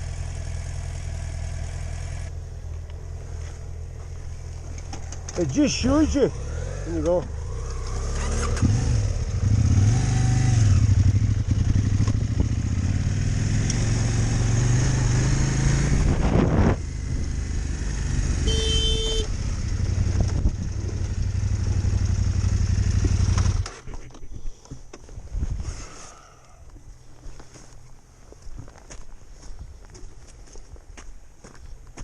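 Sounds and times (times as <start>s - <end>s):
motorcycle engine revving: 5.1s - 24.0s.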